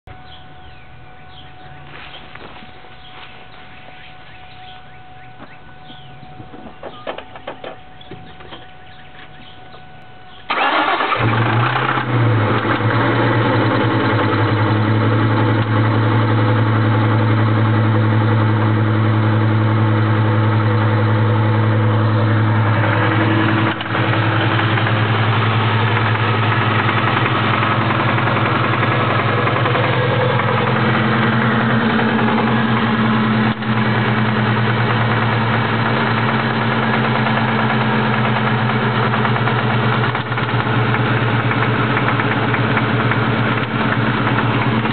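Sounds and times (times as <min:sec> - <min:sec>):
car engine idling: 0:00.0 - 0:44.9
engine rattling and ticking: 0:10.4 - 0:44.9.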